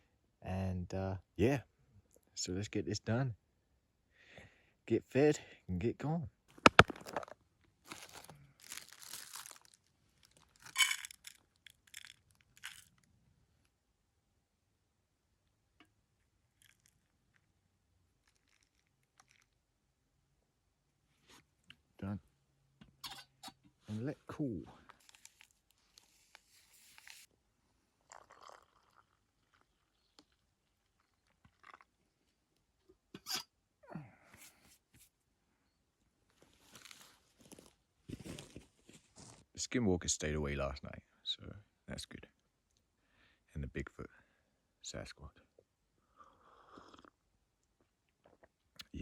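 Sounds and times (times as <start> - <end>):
crunching and rustling: 6.6 - 13.0, 24.8 - 27.3, 36.4 - 39.4.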